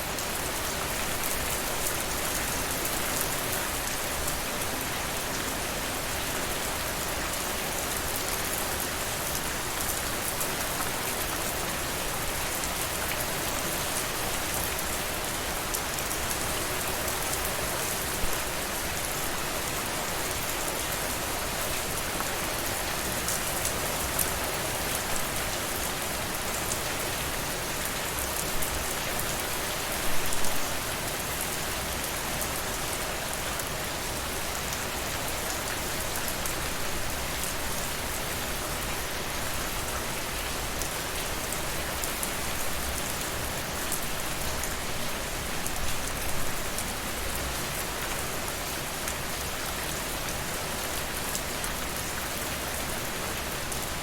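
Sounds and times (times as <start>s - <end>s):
rain pattering on a surface: 0.0s - 54.0s.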